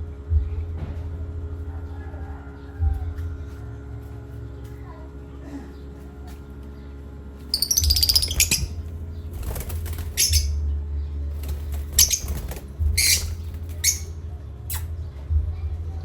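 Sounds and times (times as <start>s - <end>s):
parrot flapping wings: 7.5s - 10.6s, 11.4s - 14.1s.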